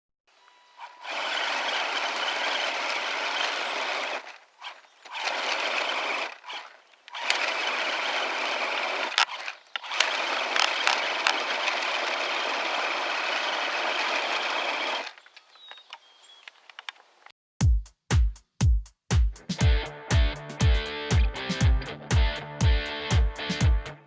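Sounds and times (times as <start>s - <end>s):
toy truck motor whirring: 0.8s - 15.2s
sharp clicks: 9.1s - 11.8s.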